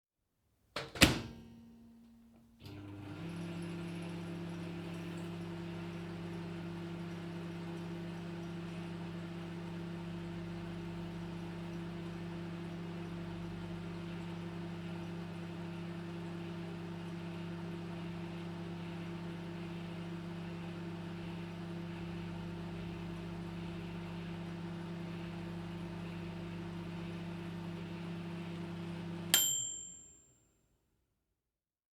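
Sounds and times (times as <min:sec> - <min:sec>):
microwave oven humming: 0:00.9 - 0:30.1
microwave bell ding: 0:29.3 - 0:30.4.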